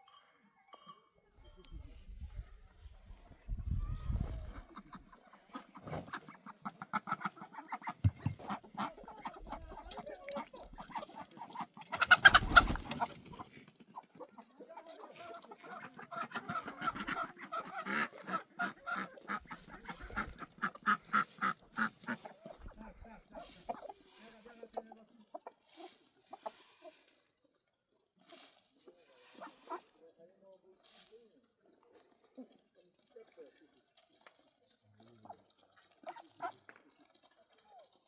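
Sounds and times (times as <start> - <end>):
chickens clucking: 3.2 - 27.3, 28.3 - 30.1.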